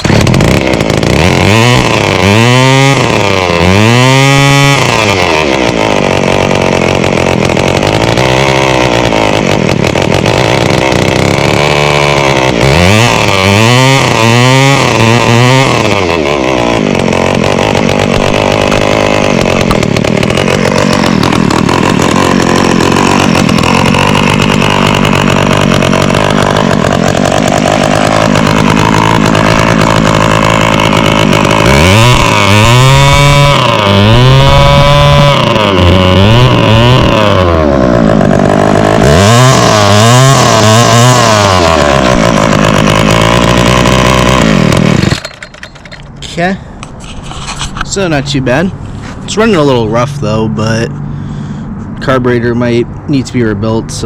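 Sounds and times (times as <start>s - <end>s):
string trimmer engine running: 0.0s - 54.0s
person speaking: 46.1s - 51.1s, 51.9s - 54.0s.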